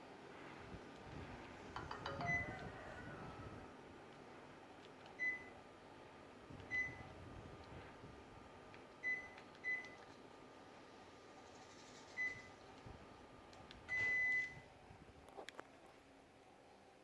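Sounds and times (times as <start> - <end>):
air conditioner short beeps: 1.9 - 3.0, 5.2 - 5.6, 6.7 - 7.1, 9.0 - 10.0, 12.2 - 12.6, 13.9 - 14.7.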